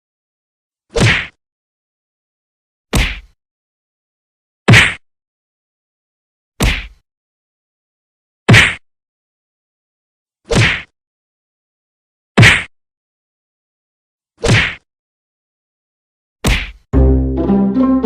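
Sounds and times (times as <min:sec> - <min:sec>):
punch hits: 0:01.0 - 0:01.3, 0:02.9 - 0:03.3, 0:04.7 - 0:05.0, 0:06.6 - 0:07.0, 0:08.5 - 0:08.8, 0:10.5 - 0:10.9, 0:12.4 - 0:12.7, 0:14.4 - 0:14.8, 0:16.4 - 0:16.8.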